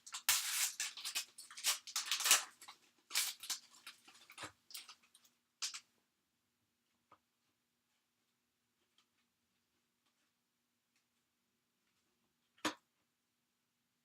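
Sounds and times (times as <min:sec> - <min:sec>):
card pack wrapper tearing: 0:00.0 - 0:03.7
wrapper crinkling: 0:00.0 - 0:05.0.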